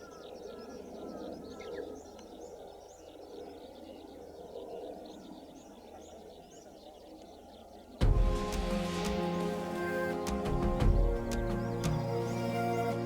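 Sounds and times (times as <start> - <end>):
small birds chirping: 0.0 - 13.0
steady low background noise: 7.8 - 13.0.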